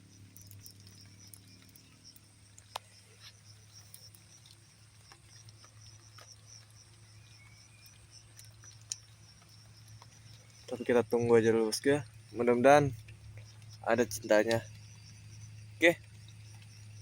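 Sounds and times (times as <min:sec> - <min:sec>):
raindrops tapping: 0:00.0 - 0:17.0.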